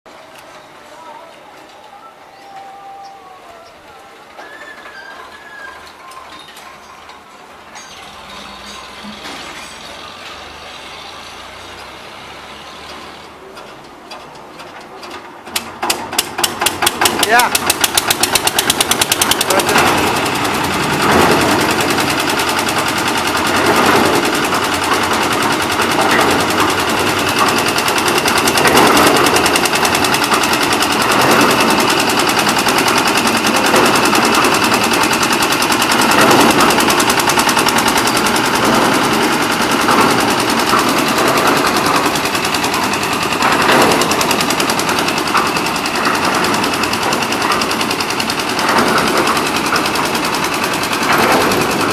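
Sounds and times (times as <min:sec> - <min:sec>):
concrete mixer engine knocking: 0:15.4 - 0:51.9.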